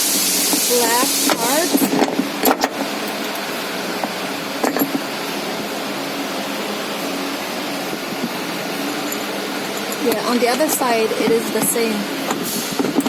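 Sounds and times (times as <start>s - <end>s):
fan-like background hiss: 0.0s - 13.0s
clatter of handled parts: 1.3s - 5.0s.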